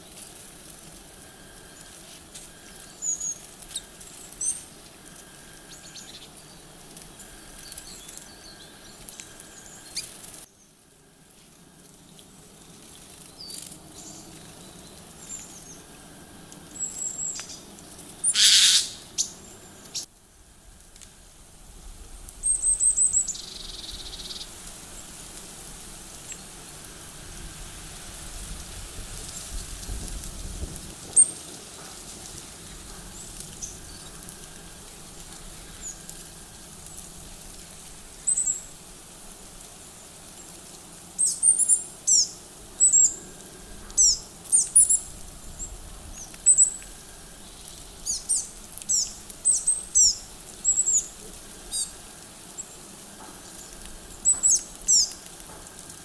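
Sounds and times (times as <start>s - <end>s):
songbirds chirping: 1.6s - 20.1s.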